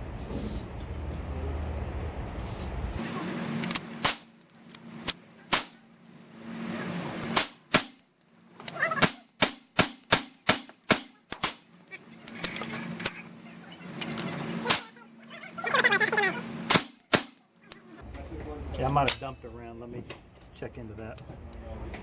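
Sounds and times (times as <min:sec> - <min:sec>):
rifle shots: 0:09.0 - 0:11.6.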